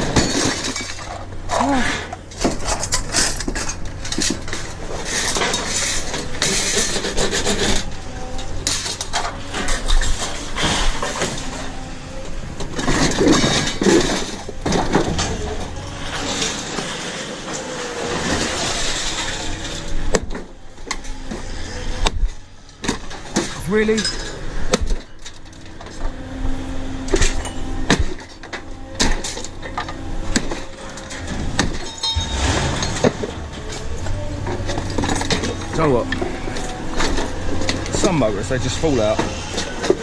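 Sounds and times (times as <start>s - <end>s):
metal scraping and knocking: 27.2s - 40.0s.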